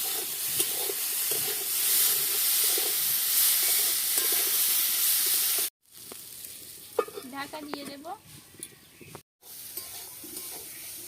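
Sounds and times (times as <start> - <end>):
vegetables sizzling in hot oil: 0.0 - 8.2, 9.4 - 11.0.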